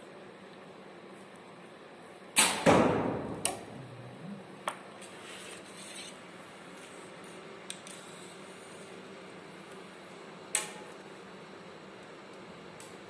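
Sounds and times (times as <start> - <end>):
arrow striking target: 2.4 - 3.7.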